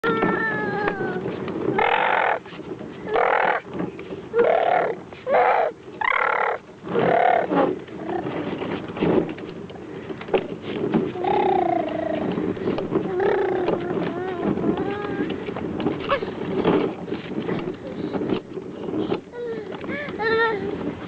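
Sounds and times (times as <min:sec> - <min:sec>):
toddler shouting: 0:00.0 - 0:02.4, 0:04.4 - 0:05.7.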